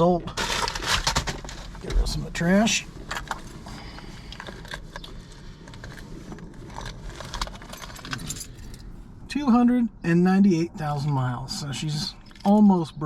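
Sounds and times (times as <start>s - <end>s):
trash rustling: 0.0s - 9.0s.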